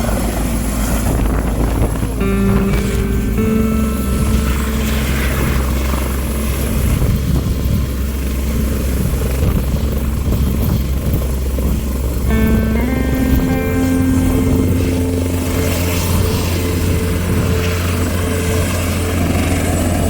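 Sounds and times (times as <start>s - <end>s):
helicopter rotor and engine: 0.0s - 2.2s, 4.8s - 12.5s, 15.6s - 20.0s.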